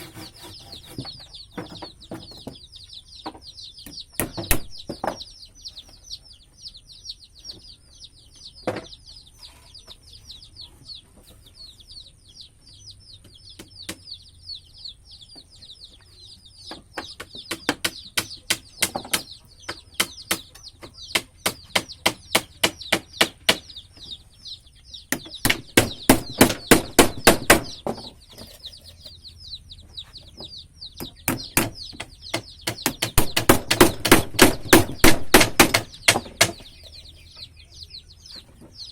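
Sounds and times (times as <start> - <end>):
birds chirping: 0.0 - 38.9
rapid hammer blows: 31.3 - 36.6.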